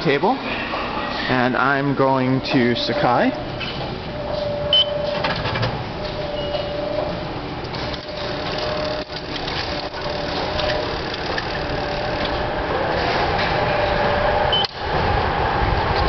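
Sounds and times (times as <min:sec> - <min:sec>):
mechanical hum with held tone: 0:00.0 - 0:16.0
short high beep: 0:04.2 - 0:05.3.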